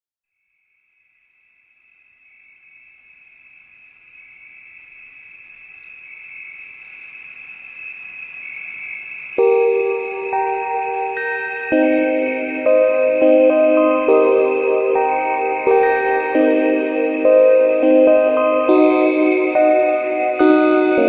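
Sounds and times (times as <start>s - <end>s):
high-pitched insect trill: 2.2s - 21.0s
mallet-like music chord: 9.4s - 21.0s.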